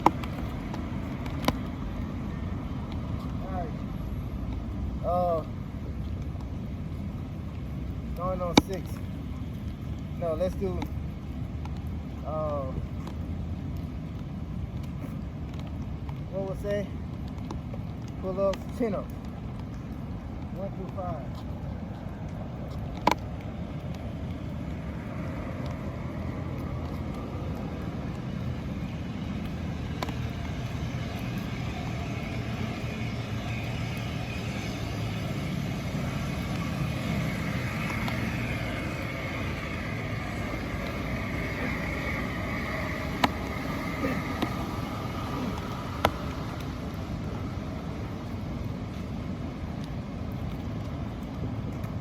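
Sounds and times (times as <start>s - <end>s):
road traffic passing: 0.0s - 52.0s
car passing by: 24.2s - 49.4s.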